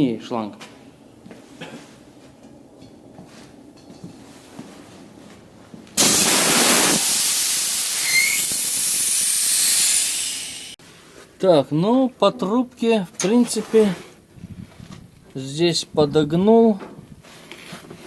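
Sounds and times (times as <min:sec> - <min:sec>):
compressed air hissing out: 0:06.0 - 0:10.8.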